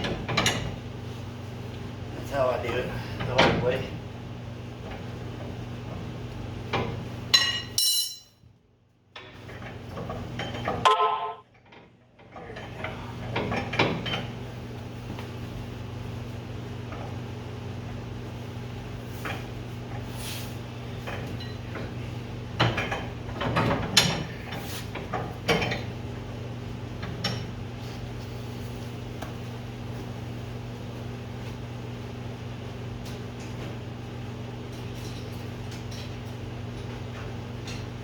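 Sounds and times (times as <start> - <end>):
metal tool clanks and scrapes: 7.4 - 8.4.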